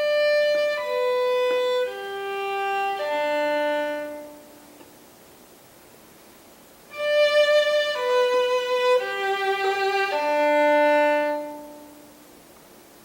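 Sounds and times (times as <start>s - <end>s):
solo violin slow held notes: 0.0s - 4.9s, 6.9s - 12.3s.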